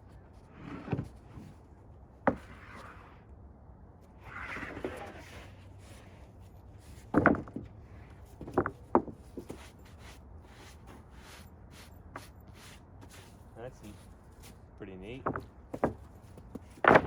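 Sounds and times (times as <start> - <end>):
wood knocking on wood: 7.1 - 7.7, 8.4 - 9.7, 15.1 - 17.0.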